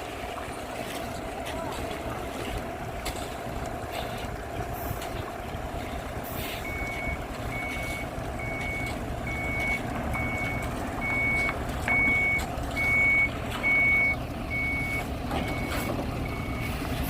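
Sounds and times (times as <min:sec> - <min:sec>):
diesel engine rumble: 0:00.0 - 0:17.0
reversing alarm beeping: 0:06.5 - 0:16.8.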